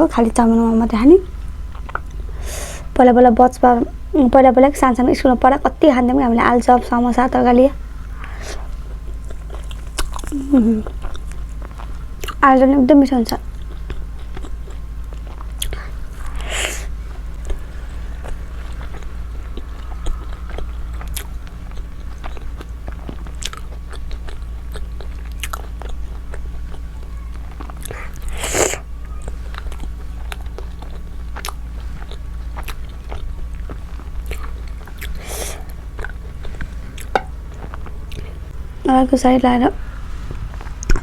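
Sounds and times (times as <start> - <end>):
chewing with wet mouth clicks: 1.2 - 2.9, 8.1 - 12.5, 13.3 - 38.6
crunchy bites: 7.9 - 12.4, 13.3 - 38.6.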